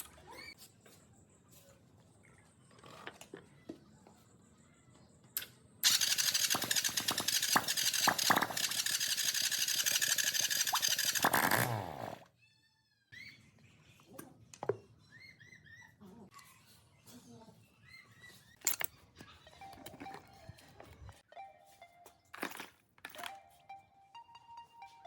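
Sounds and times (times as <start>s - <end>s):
motor-driven tool hissing: 5.8s - 12.2s.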